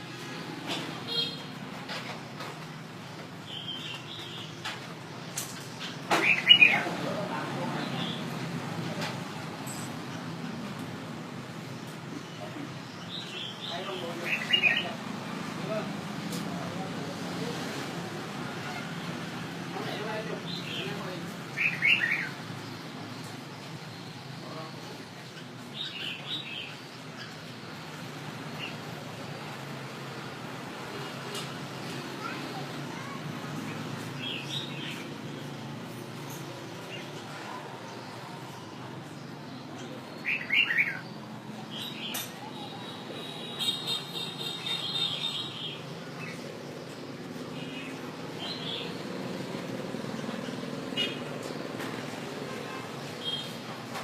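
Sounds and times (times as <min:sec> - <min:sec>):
bird singing warbled phrase: 0:06.2 - 0:08.3, 0:12.2 - 0:15.0, 0:19.9 - 0:22.8, 0:39.2 - 0:46.6.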